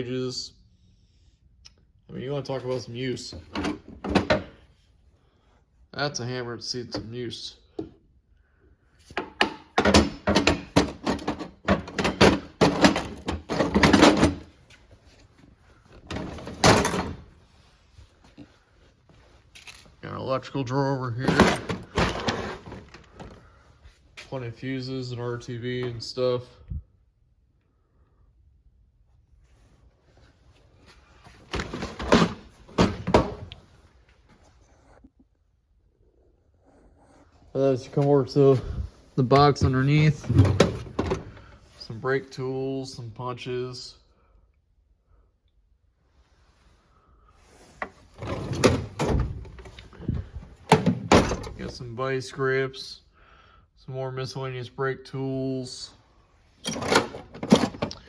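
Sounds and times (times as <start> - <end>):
tools rattling in drawers: 3.3 - 4.6, 9.2 - 14.5, 16.0 - 17.3, 21.2 - 23.3, 31.4 - 33.6, 39.4 - 41.5, 47.8 - 51.6, 56.6 - 58.0
metal drawer sliding: 9.3 - 14.5, 16.0 - 17.4, 21.2 - 23.0, 31.4 - 33.5, 47.8 - 51.6, 56.6 - 58.0.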